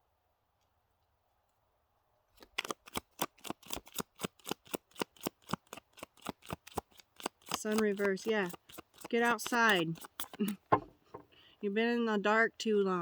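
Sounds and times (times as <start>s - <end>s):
cards being shuffled: 2.4s - 10.9s.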